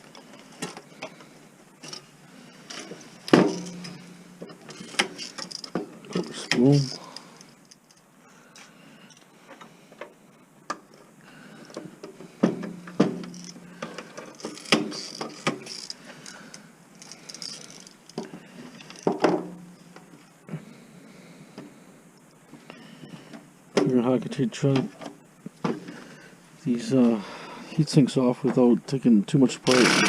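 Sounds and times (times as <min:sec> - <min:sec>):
metal and plastic parts clinking: 0:02.7 - 0:08.1, 0:12.6 - 0:16.4, 0:17.0 - 0:19.3.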